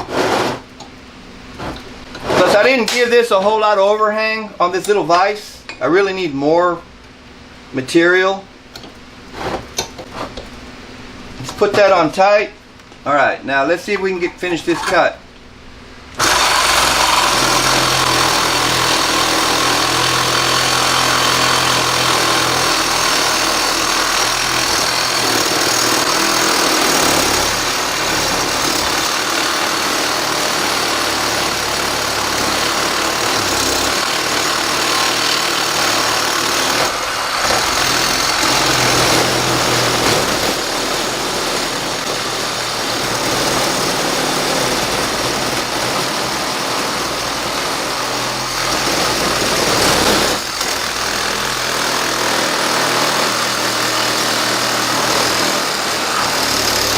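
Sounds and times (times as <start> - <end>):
reciprocating saw cutting metal: 16.2 - 56.9.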